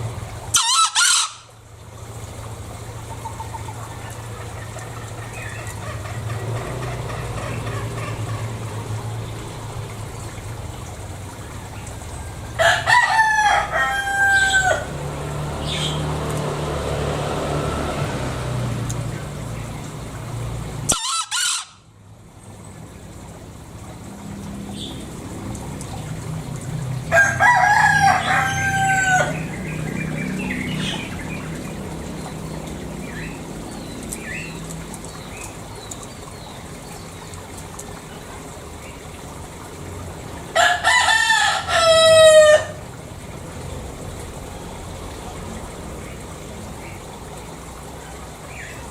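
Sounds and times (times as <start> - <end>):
rooster crowing: 0.5 - 1.5, 12.6 - 15.1, 27.1 - 29.6, 40.5 - 42.8.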